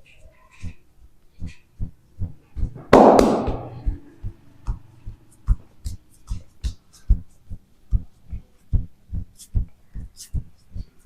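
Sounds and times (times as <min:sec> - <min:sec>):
background music with thumping beat: 0:02.2 - 0:04.9.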